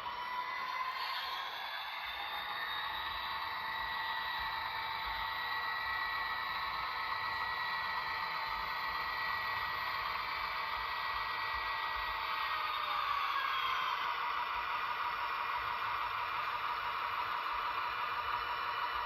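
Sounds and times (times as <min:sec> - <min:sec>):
model train motor whirring hum: 0:00.0 - 0:19.0.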